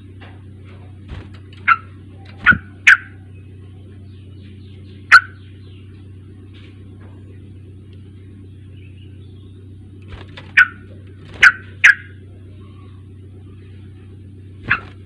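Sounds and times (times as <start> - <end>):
steady low hum: 0.0 - 15.0
faint bird chattering: 1.4 - 6.3, 7.2 - 14.0.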